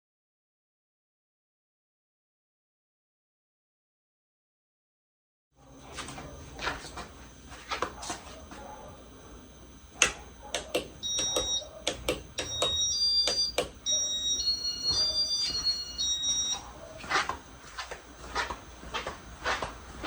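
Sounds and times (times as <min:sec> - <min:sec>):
sharp clicks: 0:10.0 - 0:13.8
high two-tone electronic beeps: 0:10.8 - 0:16.7.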